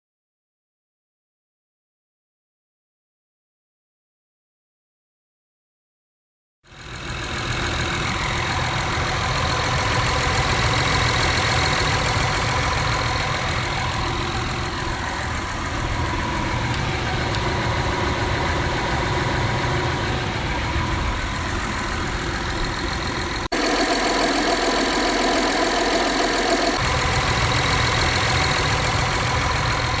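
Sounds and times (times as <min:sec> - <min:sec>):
engine idling with low rumble: 0:06.7 - 0:30.0.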